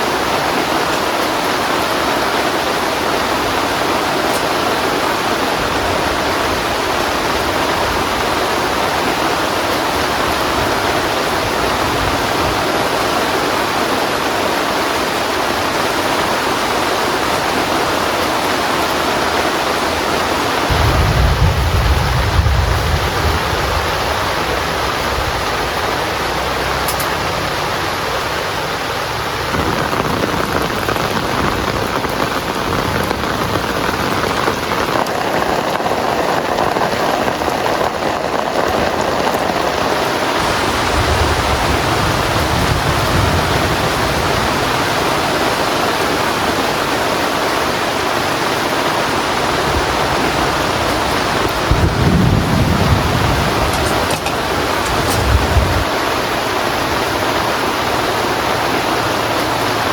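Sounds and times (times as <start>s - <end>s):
heavy rain falling: 0.0s - 59.9s
low rumble: 20.7s - 26.0s.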